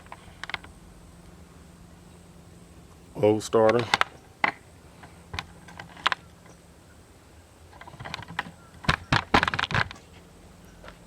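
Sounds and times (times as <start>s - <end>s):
parts clattering: 3.6s - 6.6s, 7.7s - 10.2s.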